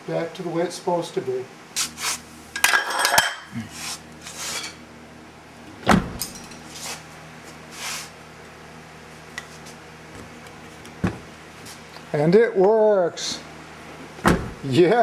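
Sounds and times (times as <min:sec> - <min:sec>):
heavy car door clunk: 0:05.8 - 0:06.4, 0:11.0 - 0:11.3, 0:14.2 - 0:14.7.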